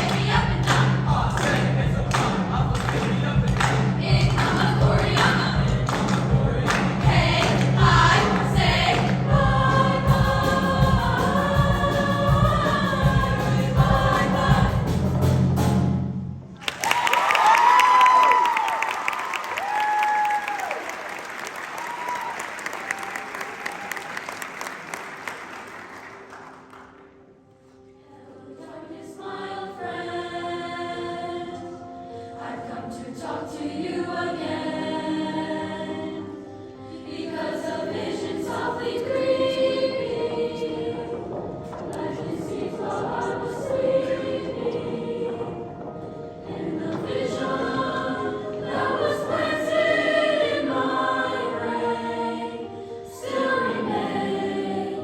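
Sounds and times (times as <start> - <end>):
girls' choir singing: 0.0 - 15.2, 28.0 - 55.0
applause: 16.6 - 27.1.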